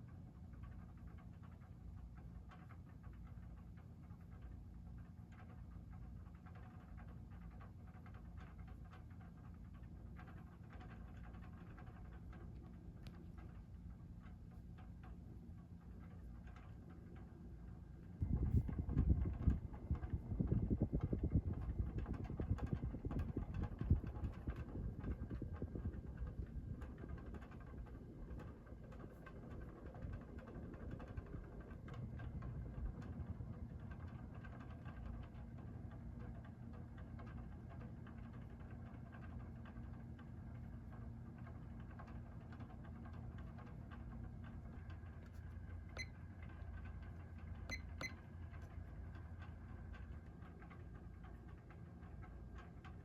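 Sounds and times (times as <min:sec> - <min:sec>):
ceiling fan motor hum: 0:00.0 - 0:53.0
moving air with rough flutter: 0:16.0 - 0:35.4.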